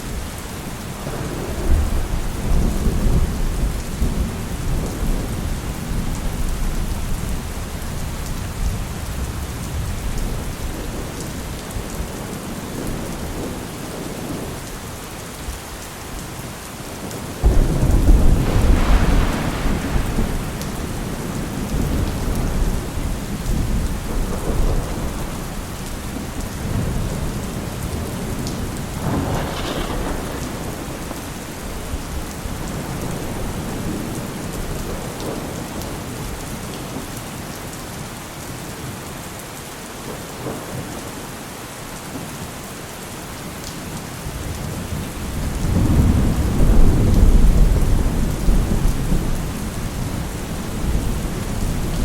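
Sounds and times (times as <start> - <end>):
heavy rain falling: 0.0 - 52.0
sharp thunderclap: 17.4 - 25.6, 26.6 - 35.5, 45.6 - 52.0
thunder rolling: 17.4 - 35.6.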